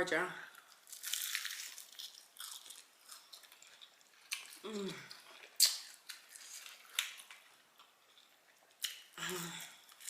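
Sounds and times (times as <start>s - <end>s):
person chewing: 0.5s - 10.0s
wet mouth clicks and smacks: 5.5s - 6.0s.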